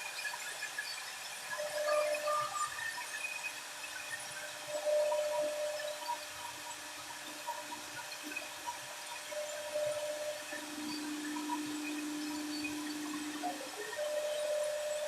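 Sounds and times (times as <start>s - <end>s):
router spindle machining wood: 4.1s - 15.0s.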